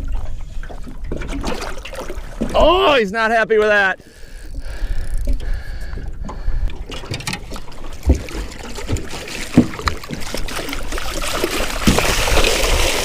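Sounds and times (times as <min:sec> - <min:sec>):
water splashing: 0:00.0 - 0:13.0
knocks and bumps on boat: 0:06.8 - 0:12.4.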